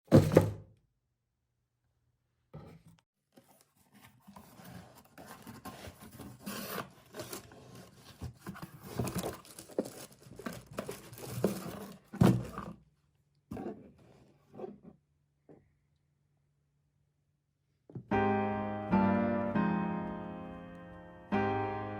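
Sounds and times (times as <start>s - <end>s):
packaging tearing and crinkling: 8.8s - 11.8s.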